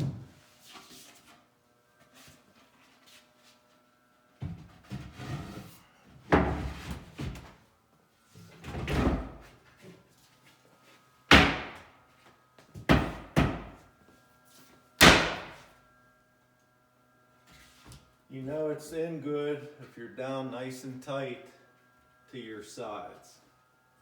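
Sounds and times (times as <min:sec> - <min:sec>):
sharp wooden knocks: 0:11.3 - 0:11.8, 0:15.0 - 0:15.6.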